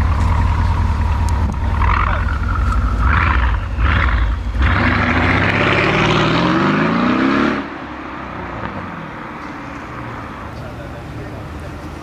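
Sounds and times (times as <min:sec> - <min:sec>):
car engine accelerating hard: 0:00.0 - 0:08.7.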